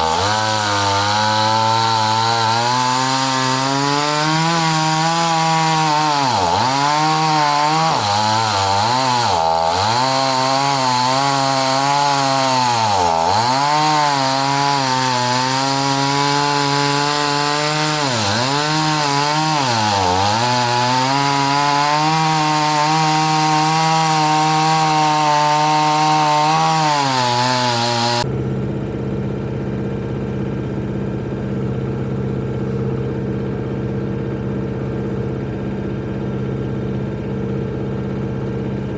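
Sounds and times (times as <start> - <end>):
chainsaw cutting a log: 0.0 - 28.4, 31.6 - 38.9
low engine hum: 28.2 - 38.9.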